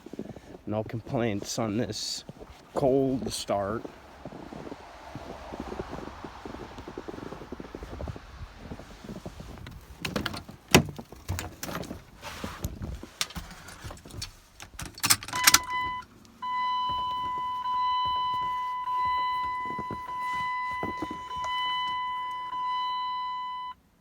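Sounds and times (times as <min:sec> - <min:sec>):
keys jangling: 0:13.2 - 0:15.7
car warning chime: 0:15.2 - 0:23.8.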